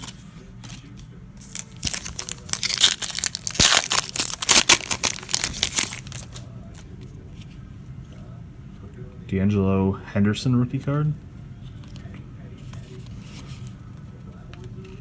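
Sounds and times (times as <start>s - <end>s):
foil wrapper crinkling and tearing: 1.4s - 6.4s.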